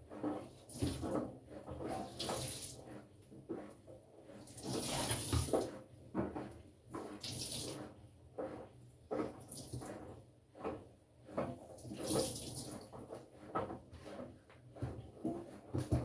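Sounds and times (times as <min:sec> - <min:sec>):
washing machine water sloshing: 0:00.4 - 0:02.9, 0:04.3 - 0:05.8, 0:06.4 - 0:08.0, 0:11.6 - 0:13.2.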